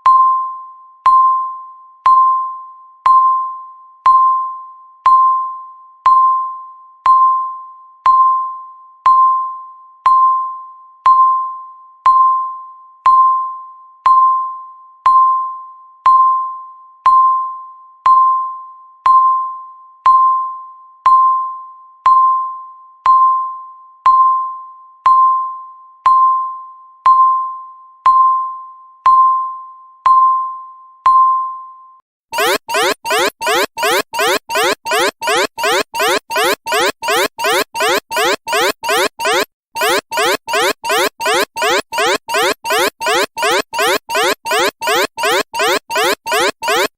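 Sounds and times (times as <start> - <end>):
countdown timer beeps: 32.4 - 46.9.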